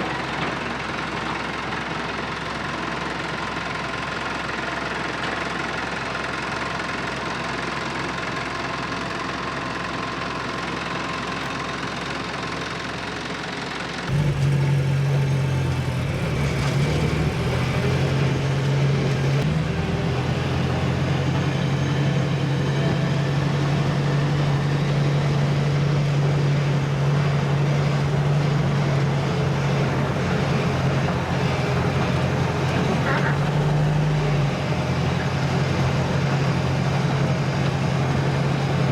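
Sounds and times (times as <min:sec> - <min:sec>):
car engine idling: 0:00.2 - 0:19.9.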